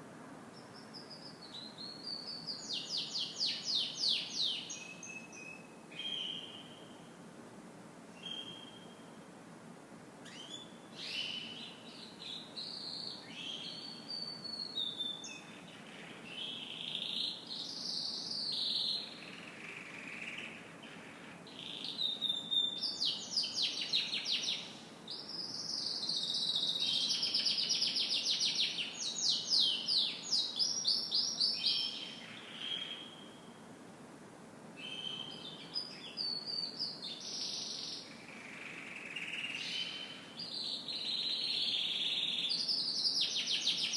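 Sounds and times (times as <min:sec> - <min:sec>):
canary singing: 0:10.2 - 0:33.4, 0:34.8 - 0:43.9.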